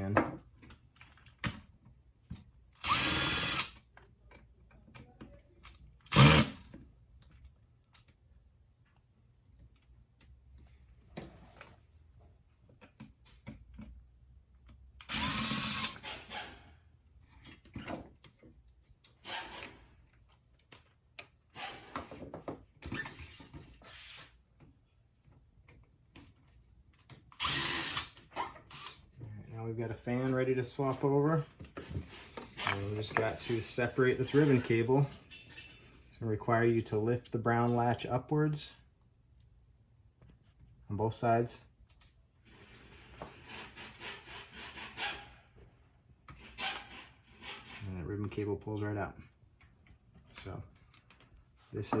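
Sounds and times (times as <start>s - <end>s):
electric screwdriver whirring: 2.8s - 3.8s, 6.1s - 6.6s, 15.1s - 16.3s.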